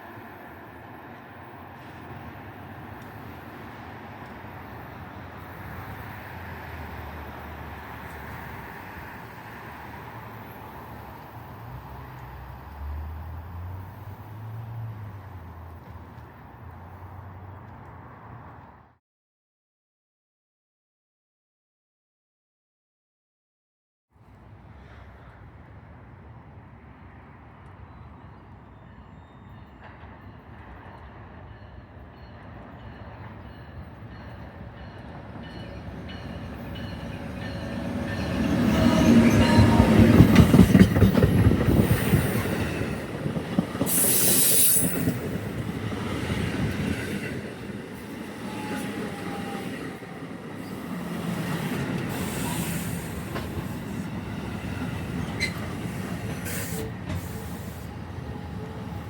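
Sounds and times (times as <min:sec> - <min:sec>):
train rumbling past: 0:00.0 - 0:18.9, 0:24.2 - 0:59.0
train wheel squeal: 0:27.9 - 0:30.7, 0:31.5 - 0:45.5, 0:48.0 - 0:59.0.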